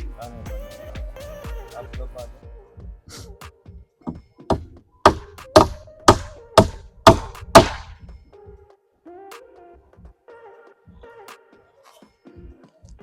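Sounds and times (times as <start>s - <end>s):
hammer strikes: 4.1s - 8.0s.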